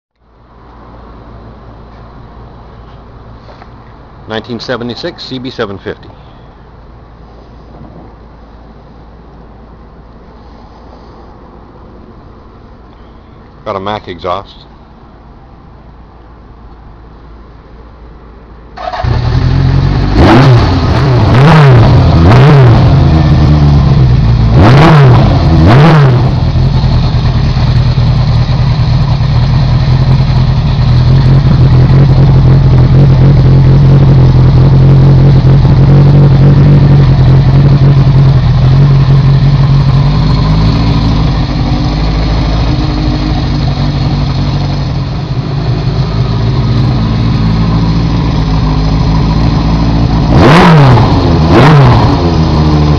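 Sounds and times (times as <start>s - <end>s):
motorcycle engine revving and idling: 18.8s - 52.9s.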